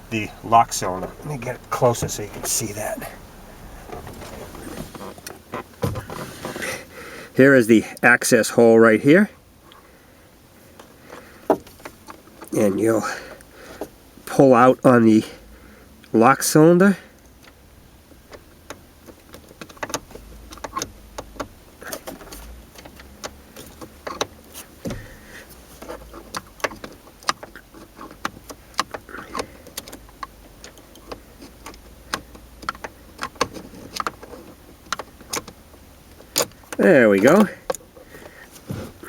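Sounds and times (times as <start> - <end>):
tool clicking in ignition lock: 25.8 - 37.8.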